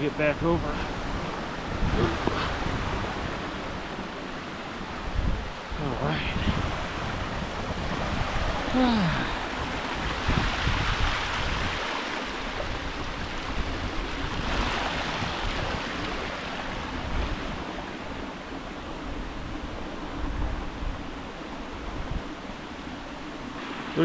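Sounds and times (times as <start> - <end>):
creek water rushing over rock: 0.0 - 18.6
wind rumble on microphone: 0.0 - 24.0.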